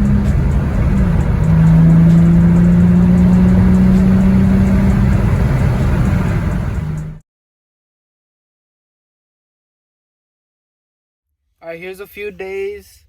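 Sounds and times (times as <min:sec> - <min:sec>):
car engine droning: 0:00.0 - 0:07.2.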